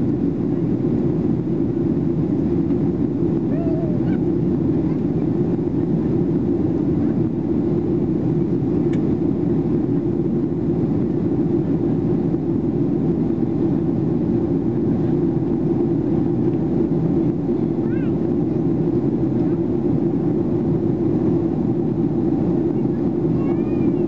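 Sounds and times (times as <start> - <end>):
jet engine rumble: 0.0 - 24.0.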